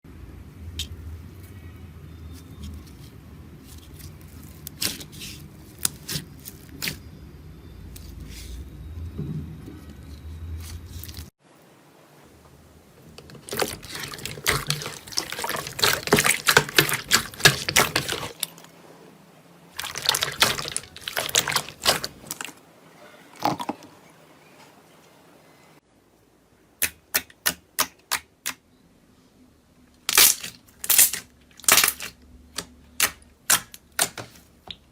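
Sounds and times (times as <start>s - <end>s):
slime squished by hand: 13.4s - 18.6s, 19.8s - 22.5s.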